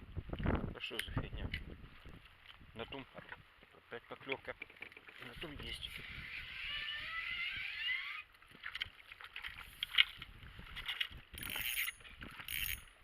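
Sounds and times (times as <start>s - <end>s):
fishing reel whirring: 5.6s - 8.3s, 11.3s - 12.9s.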